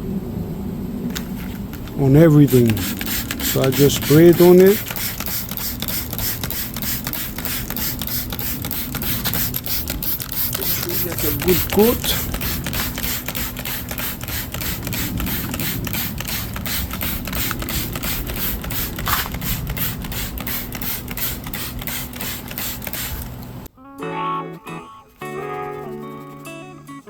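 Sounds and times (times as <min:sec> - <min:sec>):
spray bottle squirting: 0:01.1 - 0:23.5, 0:25.1 - 0:26.6
guitar music: 0:23.7 - 0:27.0.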